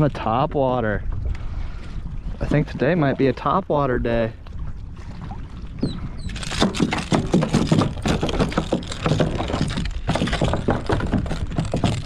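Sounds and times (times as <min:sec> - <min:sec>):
fish thrashing and splashing: 0:04.8 - 0:12.0
knocks on kayak: 0:06.6 - 0:12.0.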